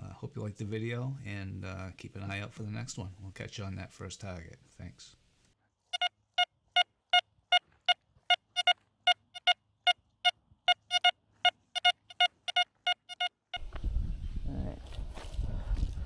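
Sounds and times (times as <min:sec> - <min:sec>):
short electronic beeps: 0:06.8 - 0:09.6, 0:10.2 - 0:13.3.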